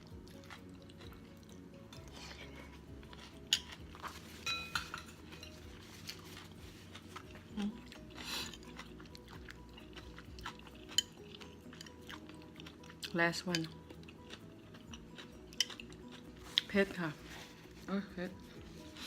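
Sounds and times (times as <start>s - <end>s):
cutlery clinking against a dish: 3.2s - 5.8s.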